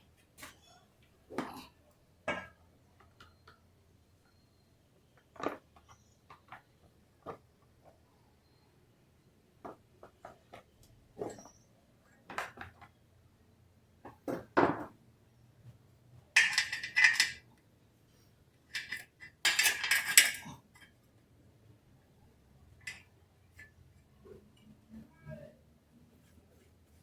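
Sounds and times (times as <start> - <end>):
metal parts clinking: 16.4 - 17.4, 18.7 - 20.6.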